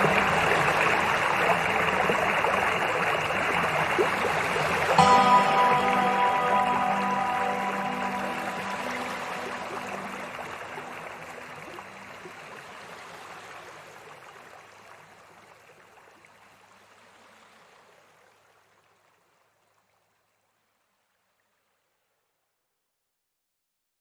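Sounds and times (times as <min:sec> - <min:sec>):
soft background music: 0:00.0 - 0:12.6
stream water rushing: 0:00.0 - 0:15.4.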